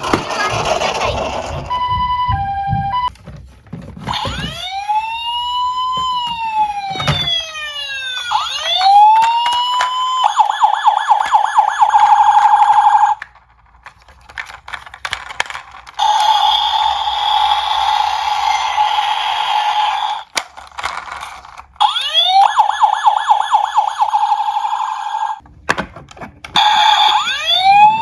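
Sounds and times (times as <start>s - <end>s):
electronic emergency siren: 0.3s - 3.1s, 4.1s - 13.2s, 16.0s - 20.3s, 21.8s - 25.4s, 26.6s - 28.0s.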